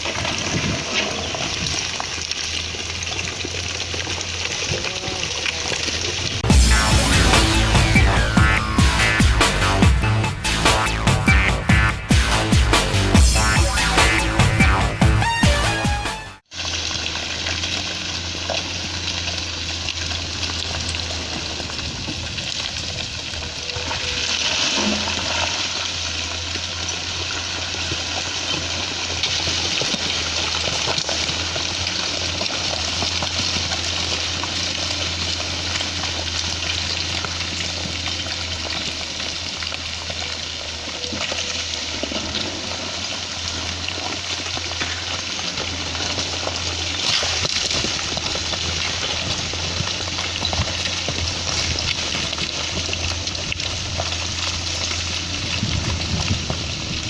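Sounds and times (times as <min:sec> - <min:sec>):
excavator diesel engine humming: 0:02.5 - 0:57.0
rushing noise: 0:06.4 - 0:17.2.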